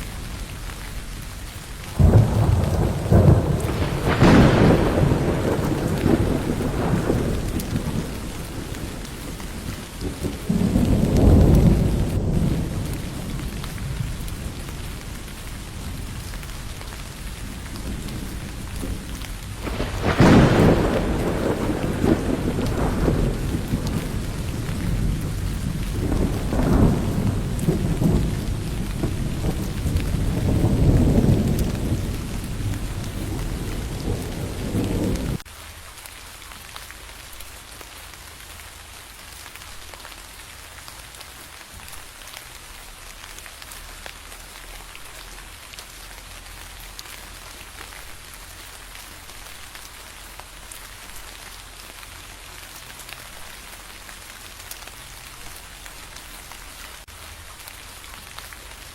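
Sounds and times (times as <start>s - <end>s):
rolling thunder rumbling: 0.0s - 35.4s
heavy rain: 0.0s - 58.9s.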